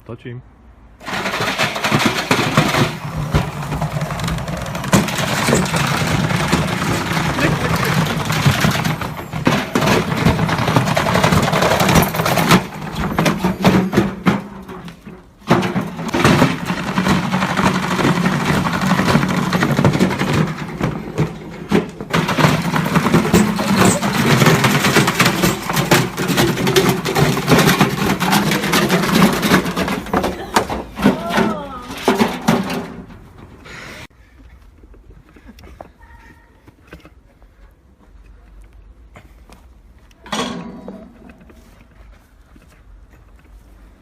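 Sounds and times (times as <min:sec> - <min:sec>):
rattling and knocking clatter: 0:01.0 - 0:33.6.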